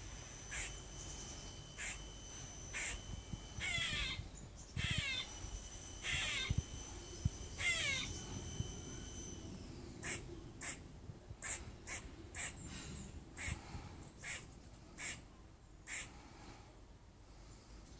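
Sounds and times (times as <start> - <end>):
squirrel raspy call: 0.4 - 1.0, 1.8 - 5.4, 6.0 - 6.6, 7.6 - 8.2, 10.0 - 12.8, 13.4 - 16.2
squirrel sharp barks: 0.5 - 0.8, 1.8 - 2.0, 2.8 - 3.0, 3.6 - 4.2, 4.8 - 5.3, 10.0 - 10.8, 11.4 - 12.6, 13.4 - 13.6, 14.2 - 15.2, 15.8 - 16.1.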